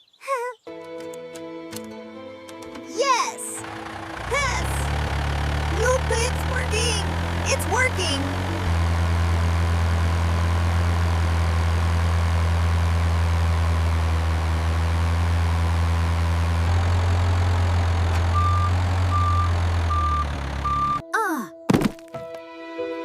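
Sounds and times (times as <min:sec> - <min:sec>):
tractor engine idling: 0:03.6 - 0:13.2, 0:15.0 - 0:21.0.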